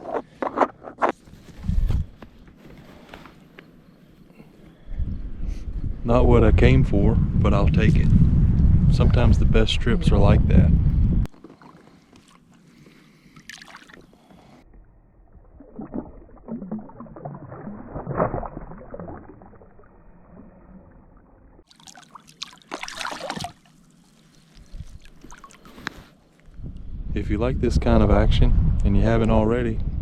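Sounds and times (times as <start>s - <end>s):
water splashing around boat: 11.3s - 14.6s, 15.5s - 20.6s, 21.6s - 26.2s.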